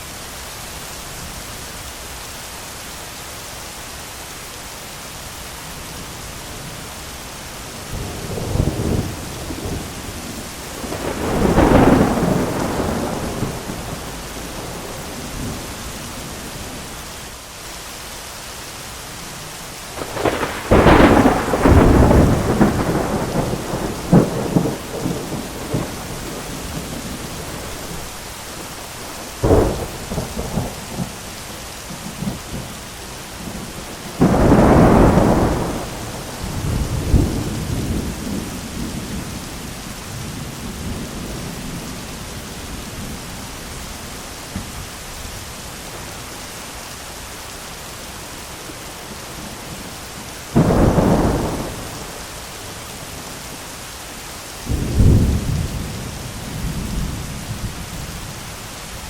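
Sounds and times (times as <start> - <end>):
heavy rain: 0.0 - 59.0
thunder claps: 10.8 - 15.7, 20.0 - 28.0.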